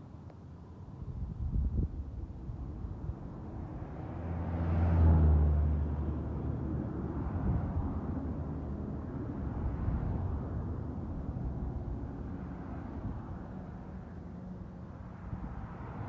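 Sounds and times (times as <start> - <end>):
outdoor noise: 0.0 - 16.0
vehicle passing by: 3.6 - 10.6.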